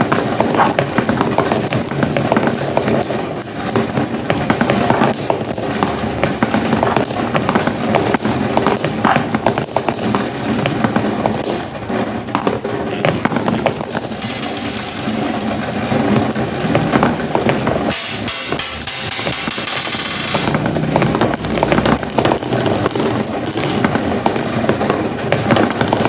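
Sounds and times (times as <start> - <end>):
marbles rolling down a track: 0.0 - 26.0
marbles clicking and clacking: 12.3 - 26.0.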